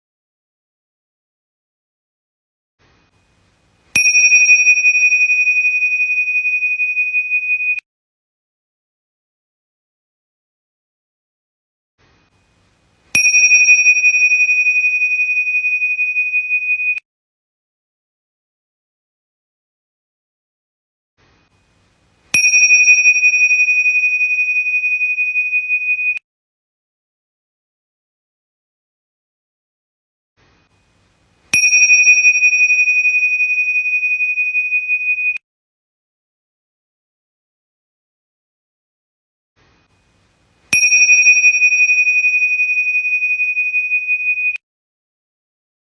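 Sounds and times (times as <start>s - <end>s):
small bell ringing: 4.0s - 7.8s, 13.2s - 17.0s, 22.3s - 26.2s, 31.5s - 35.4s, 40.7s - 44.6s.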